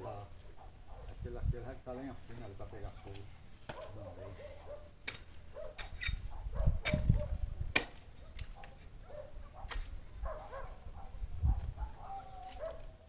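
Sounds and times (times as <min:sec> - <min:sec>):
firewood sticks knocking: 0:02.3 - 0:04.0, 0:05.0 - 0:06.2, 0:07.7 - 0:09.0.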